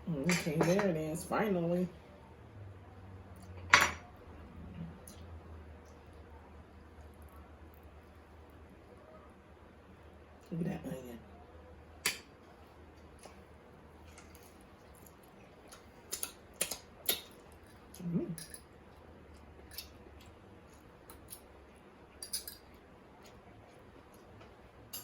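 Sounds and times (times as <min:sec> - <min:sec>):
chewing clicks and smacks: 0:14.1 - 0:18.0.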